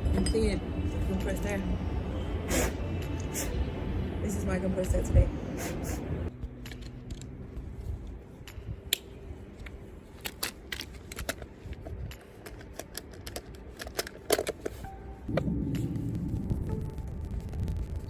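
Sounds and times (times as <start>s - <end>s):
plastic parts clicking and tapping: 9.6s - 15.0s.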